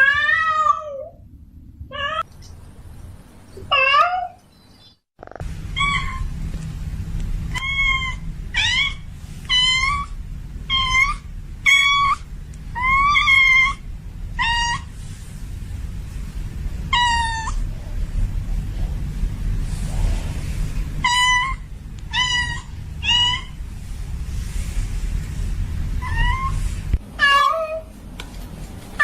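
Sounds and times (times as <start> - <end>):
steady low rumble: 0.0 - 3.6, 5.2 - 29.0
cat meowing: 7.5 - 10.1, 21.0 - 23.6, 27.2 - 27.9.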